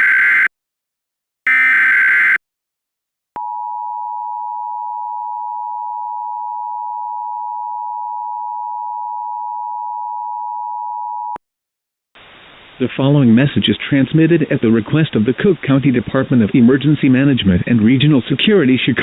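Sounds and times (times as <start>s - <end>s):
two-tone alert signal: 1.5s - 2.4s.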